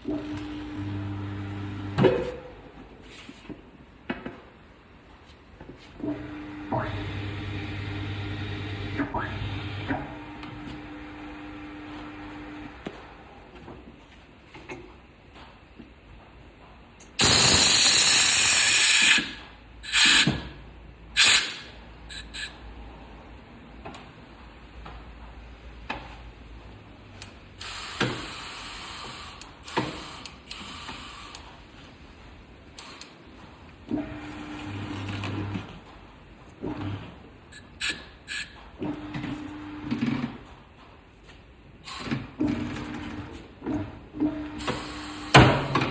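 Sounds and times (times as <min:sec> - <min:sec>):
workshop knocks: 0:45.3 - 0:45.9.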